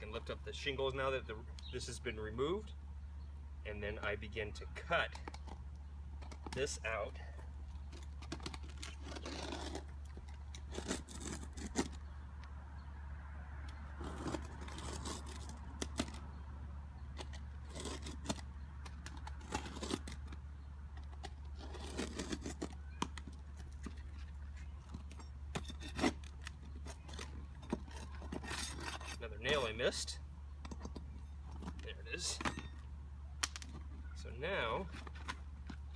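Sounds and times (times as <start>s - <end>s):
utility knife scraping shingle: 7.8s - 12.3s, 13.8s - 16.4s, 17.0s - 34.0s.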